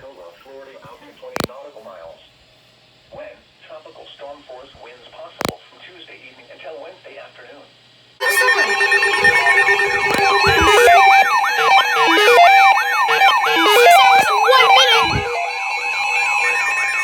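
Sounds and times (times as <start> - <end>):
rising siren-like alarm sweep: 8.2 - 17.0
steady high tones: 8.2 - 17.0
stepping electronic beeps: 8.2 - 17.0.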